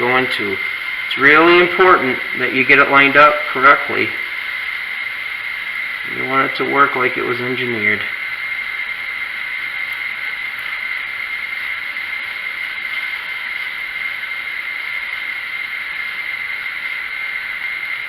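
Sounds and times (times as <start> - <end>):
faint ticks of small parts: 0.0 - 13.8
steady background hiss: 0.0 - 18.0.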